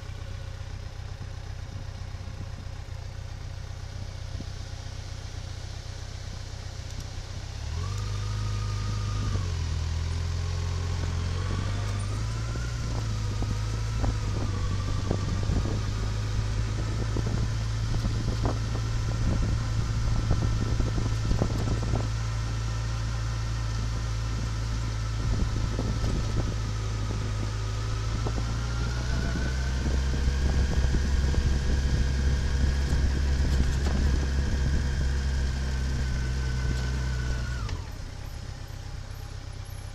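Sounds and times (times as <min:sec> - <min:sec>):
vehicle engine revving: 0:07.5 - 0:38.7.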